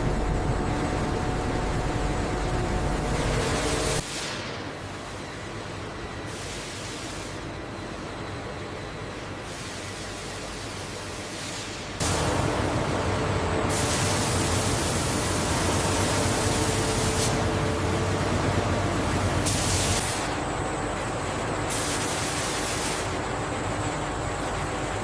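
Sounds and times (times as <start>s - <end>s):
low hum: 0.0s - 4.0s.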